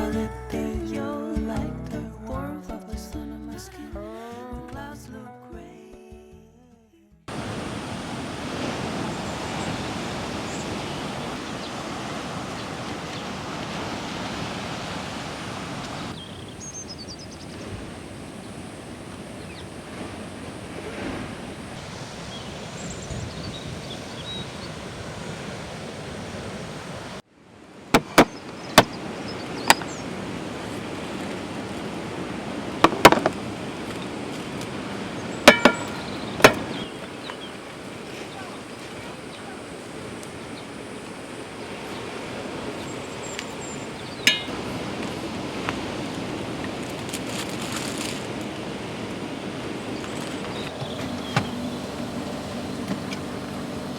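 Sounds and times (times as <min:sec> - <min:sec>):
sea surf washing: 0:07.3 - 0:53.9
sharp clicks and knocks: 0:32.9 - 0:33.4.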